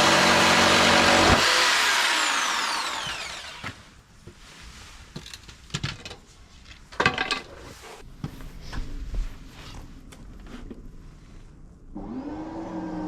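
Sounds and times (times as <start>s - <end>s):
power tool winding down: 0.0s - 3.8s.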